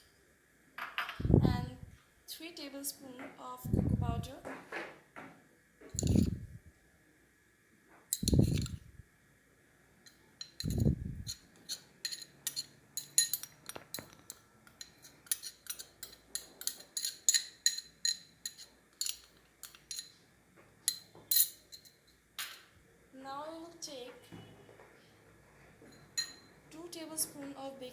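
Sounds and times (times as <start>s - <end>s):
spoon clinking against bowl: 6.0s - 6.4s, 8.1s - 8.8s, 10.1s - 20.2s, 20.9s - 22.6s, 25.9s - 26.6s.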